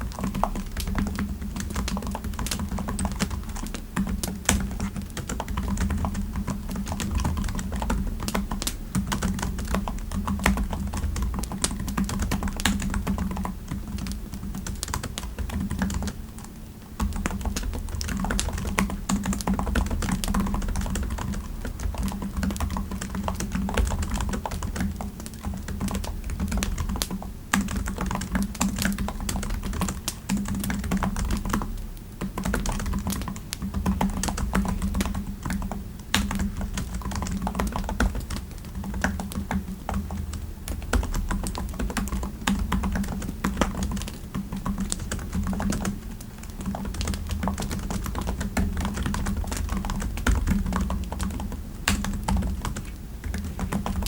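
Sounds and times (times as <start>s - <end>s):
typing on computer keyboard: 0.0s - 54.0s.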